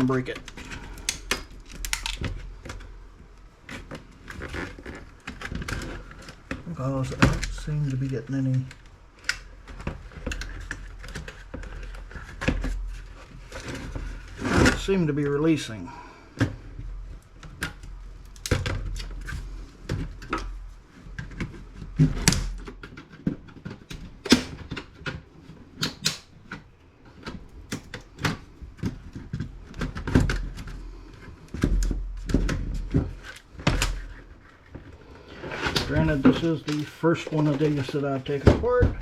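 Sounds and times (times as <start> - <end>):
plastic case clips snapping: 25.8 - 26.3.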